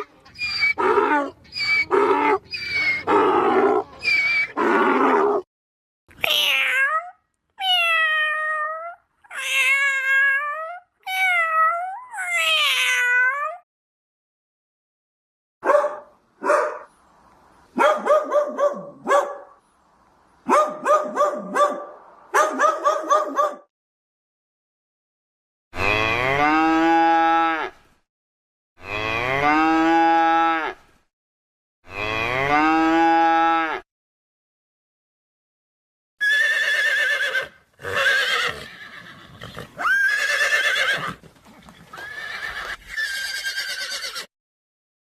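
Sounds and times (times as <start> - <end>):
horse neighing: 36.2 - 44.3.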